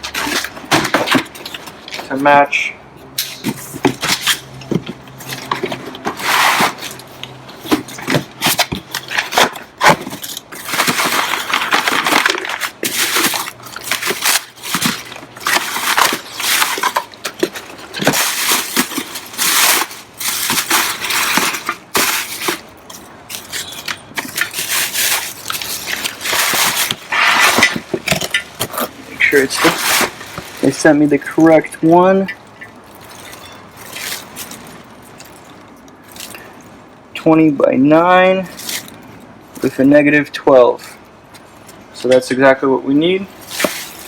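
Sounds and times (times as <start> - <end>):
packaging crinkling and rustling: 0.0 - 2.1, 3.2 - 36.8, 38.5 - 39.8, 43.3 - 44.0.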